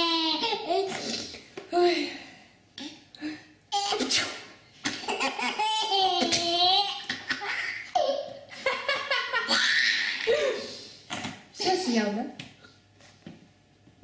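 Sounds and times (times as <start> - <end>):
small child laughing: 4.9 - 10.6.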